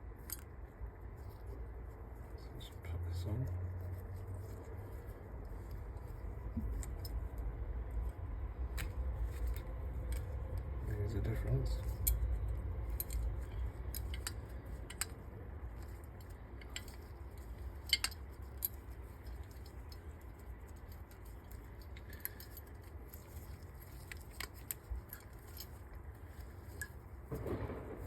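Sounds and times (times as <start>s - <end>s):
low steady rumble: 0.0s - 28.0s
small metallic clicks and taps: 3.4s - 8.1s, 11.7s - 27.7s.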